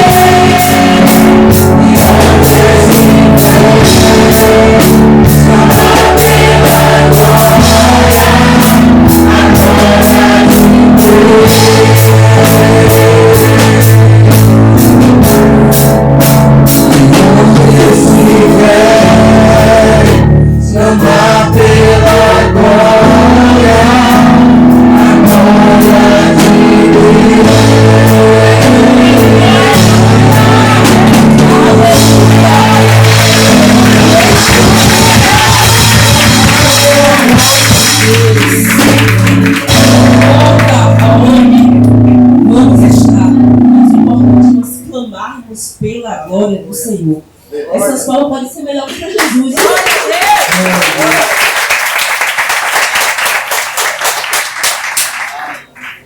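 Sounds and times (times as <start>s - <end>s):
people singing: 0.0s - 15.0s, 16.8s - 44.5s
band playing bass notes: 0.0s - 47.4s.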